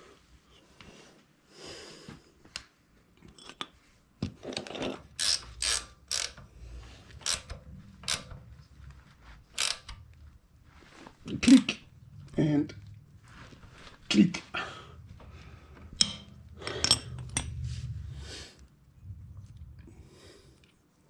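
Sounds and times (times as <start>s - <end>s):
ratchet wrench ratcheting: 5.1s - 6.5s, 7.1s - 8.4s, 9.5s - 10.1s.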